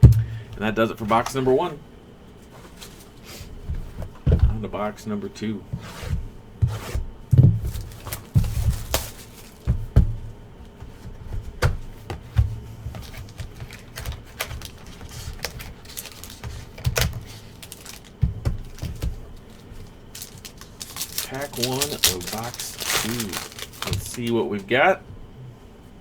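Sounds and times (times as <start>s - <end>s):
wrapper rustling: 7.7s - 9.7s, 12.9s - 24.6s
cards box clicking and tapping: 12.9s - 24.4s.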